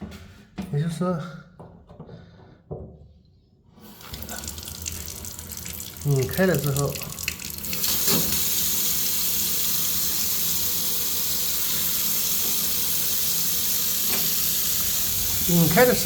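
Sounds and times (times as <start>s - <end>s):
tap water gushing: 3.8s - 16.0s.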